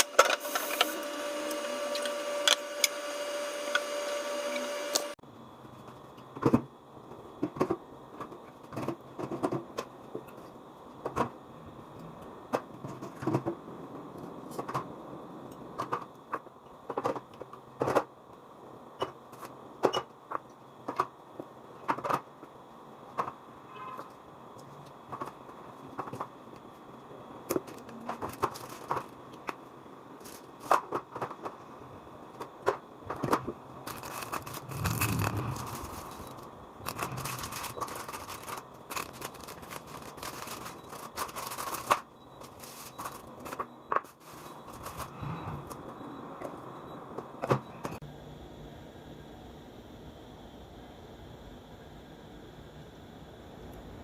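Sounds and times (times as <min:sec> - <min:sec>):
items clicking and knocking: 0:32.4 - 0:45.8.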